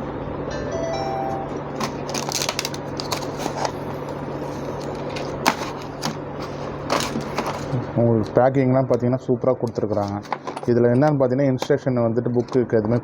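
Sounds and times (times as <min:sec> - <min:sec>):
packaging rustling: 0:01.8 - 0:07.8
packaging clicks: 0:01.8 - 0:08.3.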